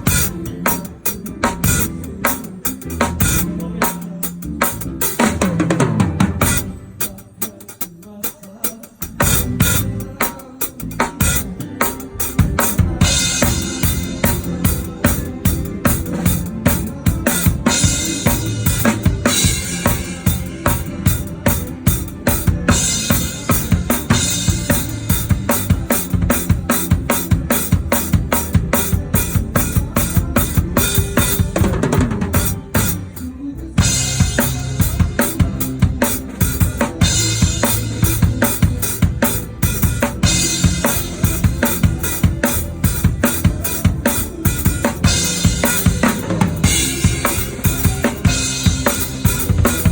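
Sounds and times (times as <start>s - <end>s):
band playing: 0.0s - 49.9s
drum kit beat with cymbals: 0.0s - 49.9s.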